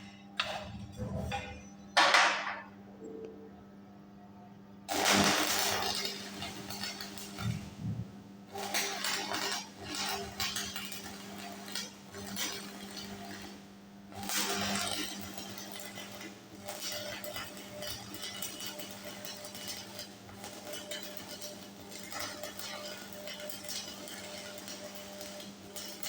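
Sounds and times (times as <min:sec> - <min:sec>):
steady low hum: 0:00.0 - 0:12.3.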